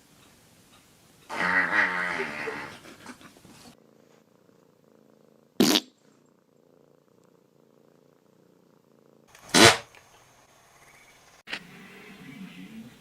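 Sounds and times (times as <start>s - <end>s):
cat purring: 1.1s - 9.4s.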